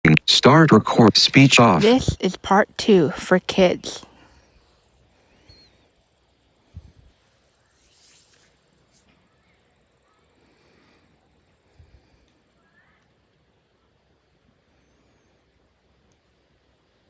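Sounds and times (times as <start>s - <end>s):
faint high-pitched tone: 1.3s - 4.0s.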